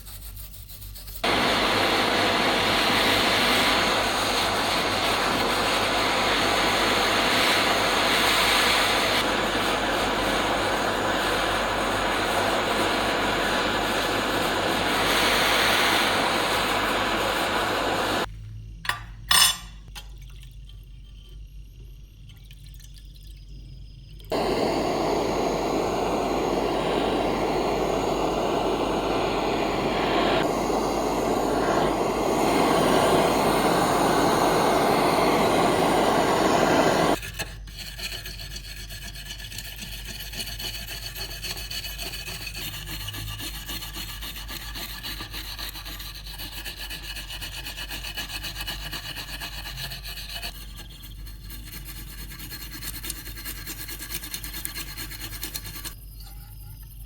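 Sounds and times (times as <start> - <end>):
abrasive scraping of sanding: 0.0 - 1.4, 24.3 - 56.0.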